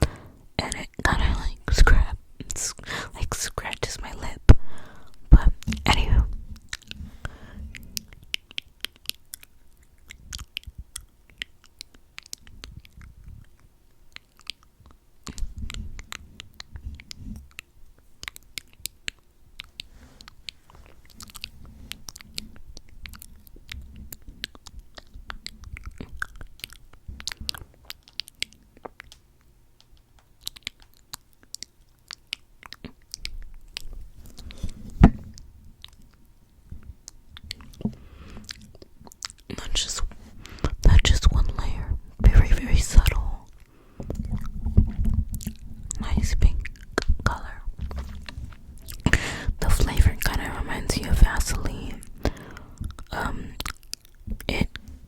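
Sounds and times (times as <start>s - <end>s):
lips smacking: 37.4s - 54.9s.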